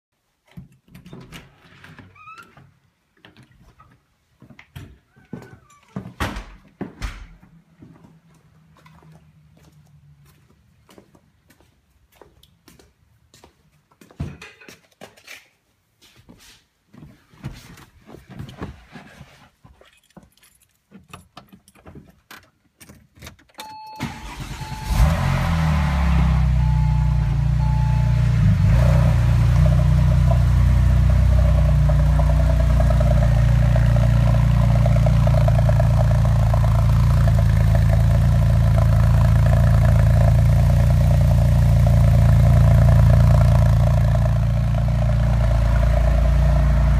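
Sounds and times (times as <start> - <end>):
keys being handled: 19.8 - 22.1
car engine starter cranking: 23.5 - 25.7
short beeps: 23.6 - 25.1, 26.6 - 28.4.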